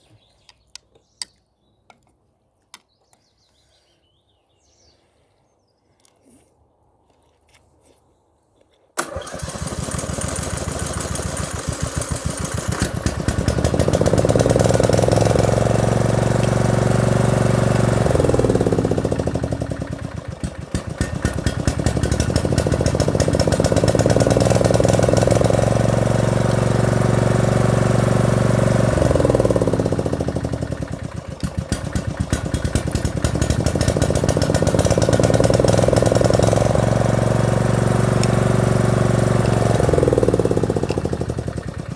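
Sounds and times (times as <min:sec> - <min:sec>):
lawn mower engine revving: 0:09.0 - 0:41.9.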